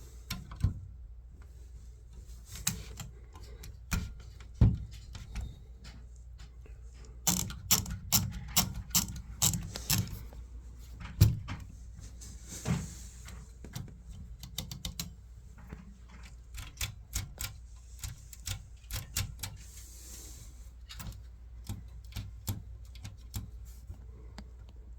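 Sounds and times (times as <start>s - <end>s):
typewriter mechanism ratcheting: 7.2s - 10.2s, 16.5s - 19.6s
typewriter key strikes: 7.3s - 10.1s.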